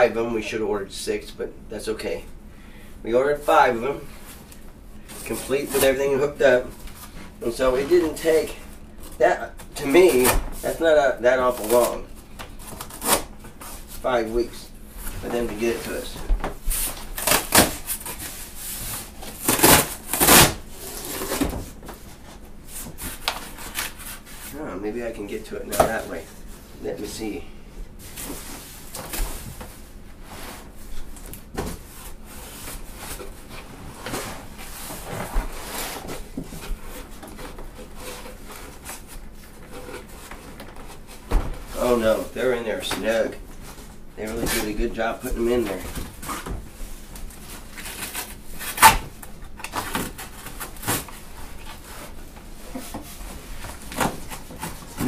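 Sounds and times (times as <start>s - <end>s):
knife cutting cardboard and foam: 16.8s - 18.3s, 18.9s - 21.6s, 47.8s - 49.1s
cardboard scraping and rubbing: 28.0s - 49.1s.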